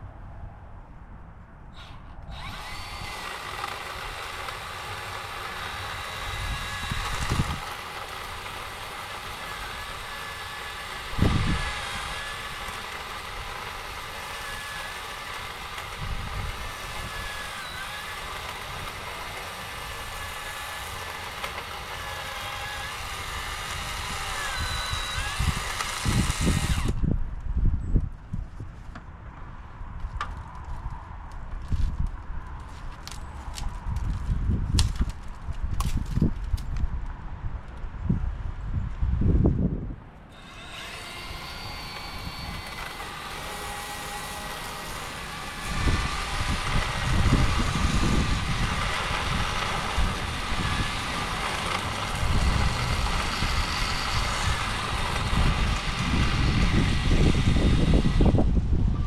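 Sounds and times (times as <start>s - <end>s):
power saw cutting branches: 1.8s - 27.2s, 40.3s - 59.0s.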